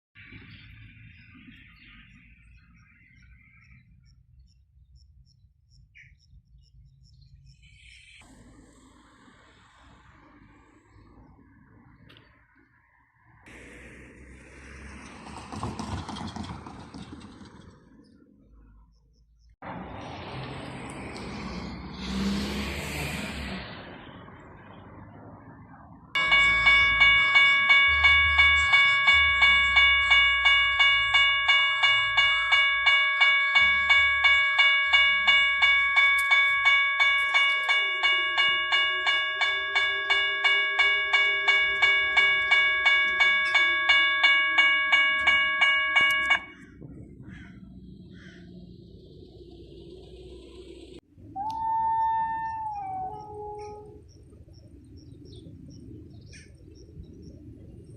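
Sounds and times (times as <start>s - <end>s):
level crossing bell ringing rapidly: 26.2s - 46.5s.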